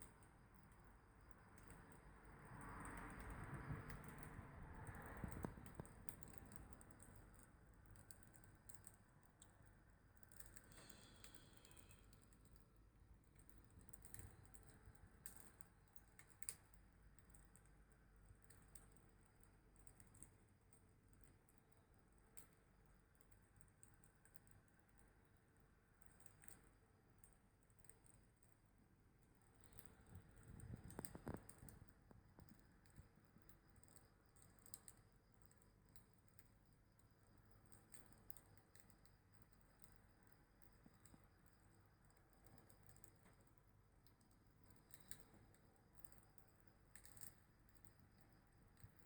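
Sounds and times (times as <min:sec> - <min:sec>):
wood fire crackling: 0:29.6 - 0:33.0.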